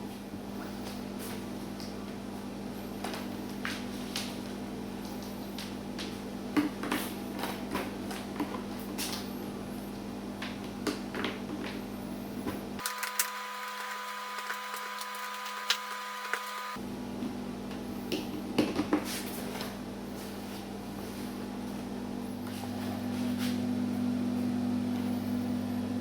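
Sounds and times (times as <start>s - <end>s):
steady machine hum: 12.0s - 18.1s, 19.8s - 26.0s.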